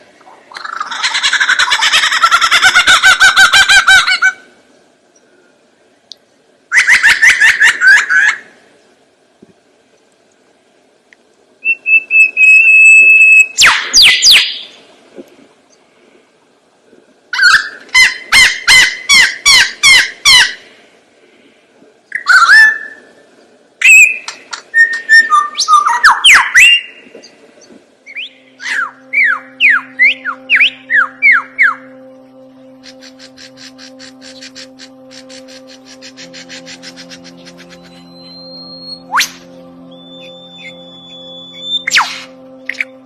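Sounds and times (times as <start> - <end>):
lyrebird singing whistled phrases: 11.6 - 14.8, 22.1 - 23.1, 23.8 - 27.0, 28.1 - 32.0, 32.6 - 43.0.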